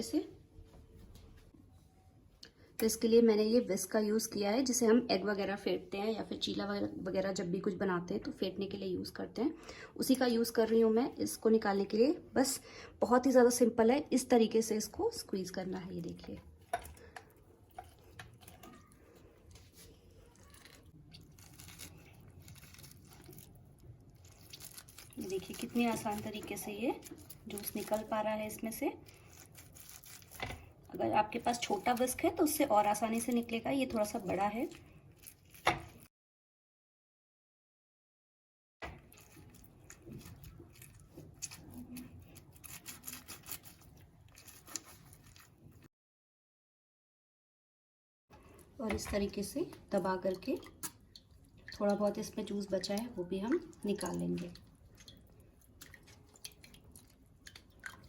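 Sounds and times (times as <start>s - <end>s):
whisk squishing an orange: 16.1s - 36.1s, 38.8s - 45.9s, 50.3s - 58.0s.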